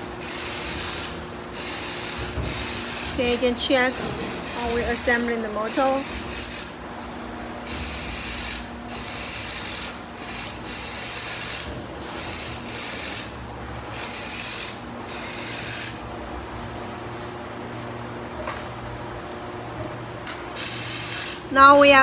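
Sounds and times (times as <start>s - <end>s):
low workshop hum: 0.0s - 22.0s.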